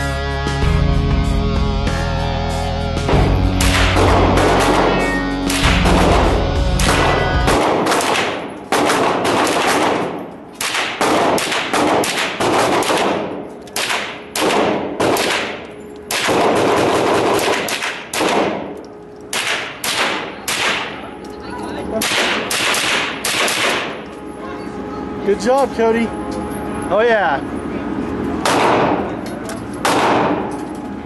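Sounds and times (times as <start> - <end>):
background music: 0.0 - 8.4
gunshots: 3.1 - 21.1, 22.0 - 24.0, 28.4 - 29.2, 29.8 - 30.6.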